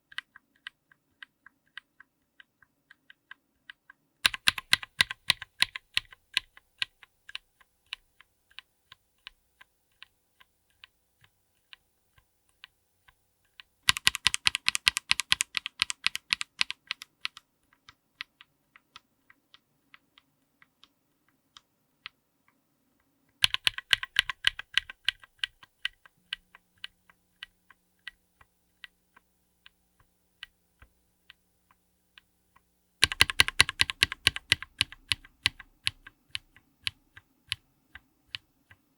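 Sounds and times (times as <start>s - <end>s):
mechanical keyboard keystrokes: 0.0s - 9.4s, 13.5s - 20.9s, 23.4s - 28.9s, 33.0s - 38.8s.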